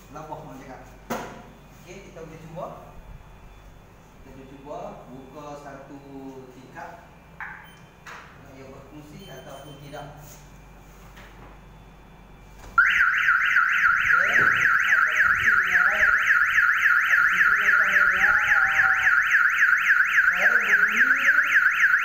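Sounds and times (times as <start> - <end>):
warbling electronic alarm siren: 11.7 - 22.0.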